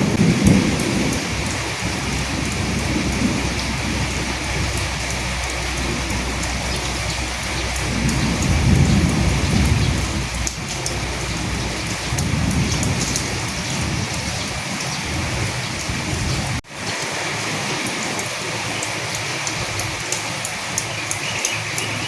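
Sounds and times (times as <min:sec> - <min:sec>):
low rumble: 0:00.0 - 0:16.6
heavy rain hissing: 0:00.0 - 0:22.0.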